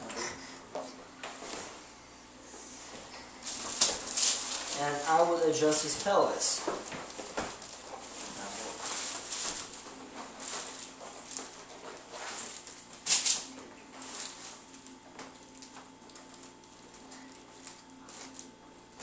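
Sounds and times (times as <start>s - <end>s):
soft rustling: 0.8s - 13.0s.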